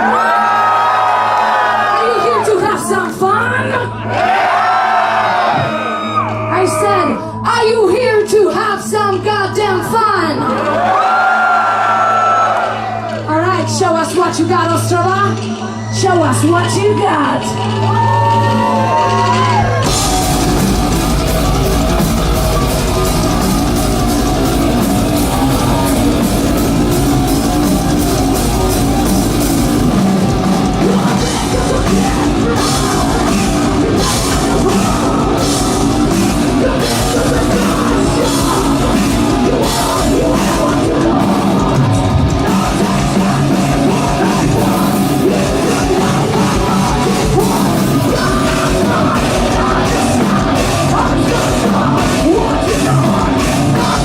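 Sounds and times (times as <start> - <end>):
bass guitar: 11.8 - 54.0
distorted guitars: 11.8 - 54.0
pounding drum kit: 17.4 - 54.0.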